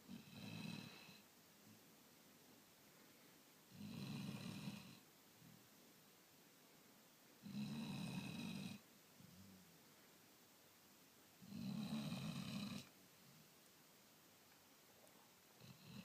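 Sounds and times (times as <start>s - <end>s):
dog snoring: 0.1s - 1.2s, 3.7s - 5.0s, 7.4s - 9.5s, 11.4s - 12.9s, 15.6s - 16.0s.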